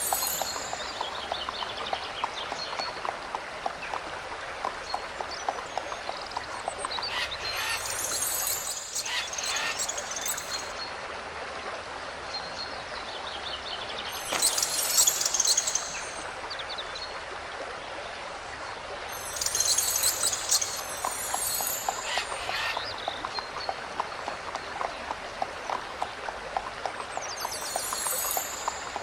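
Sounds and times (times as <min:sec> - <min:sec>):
birds chirping: 0:00.0 - 0:01.7, 0:06.0 - 0:10.8, 0:14.1 - 0:16.6, 0:19.1 - 0:23.7
rushing stream: 0:00.0 - 0:29.0.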